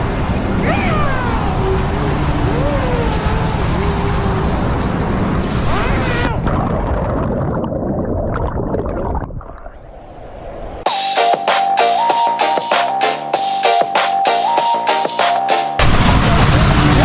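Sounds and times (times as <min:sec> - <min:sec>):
loud noisy rumble with sliding tones: 0:00.0 - 0:06.8, 0:15.8 - 0:17.0
electronic music with steady beat: 0:10.9 - 0:15.8.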